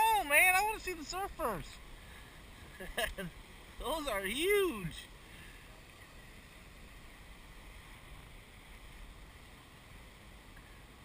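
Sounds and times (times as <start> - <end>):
heavy surf breaking: 0.0 - 5.4.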